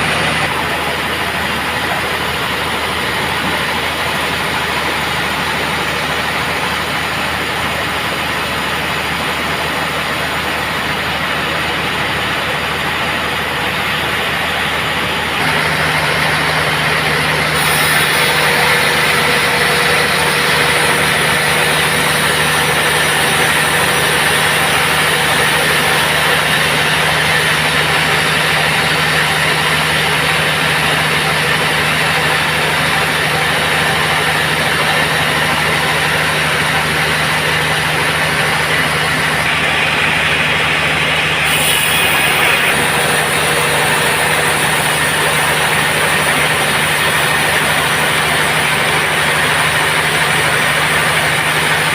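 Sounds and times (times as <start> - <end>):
band saw running: 0.0 - 51.9
hiss: 17.5 - 19.3.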